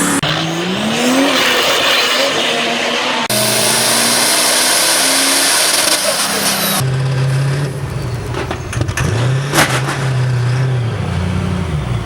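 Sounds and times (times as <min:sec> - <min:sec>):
diesel engine running: 0:03.2 - 0:12.0.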